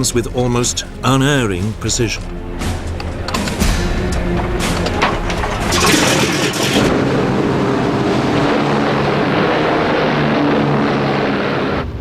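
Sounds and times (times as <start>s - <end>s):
piston aircraft engines droning: 0.0s - 12.0s
rapid clatter of sharp bangs: 2.7s - 9.7s.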